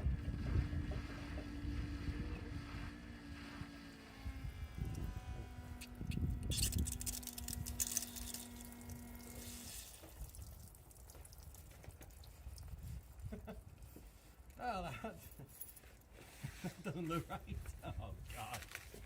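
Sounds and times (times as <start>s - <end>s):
steady electric hum: 0.0s - 10.0s
diesel splashing and dripping: 6.5s - 13.3s
small handling sounds: 15.2s - 19.0s.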